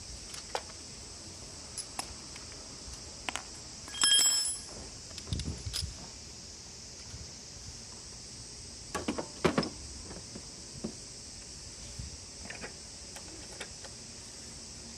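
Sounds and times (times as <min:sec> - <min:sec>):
steady high hiss: 0:00.0 - 0:14.9
hand tools clinking on metal: 0:03.9 - 0:04.7.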